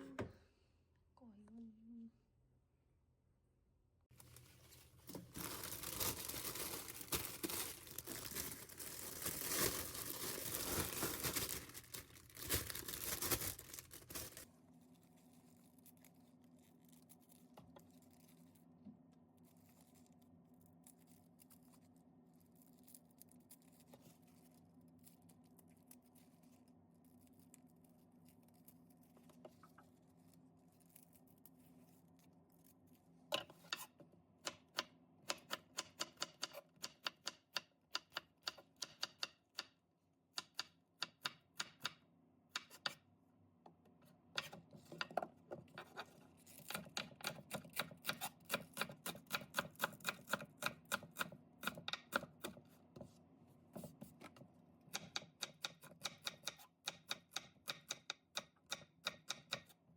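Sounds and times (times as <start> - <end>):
quiet steady hum: 0.0 - 57.5
crinkling and tearing: 4.1 - 18.7.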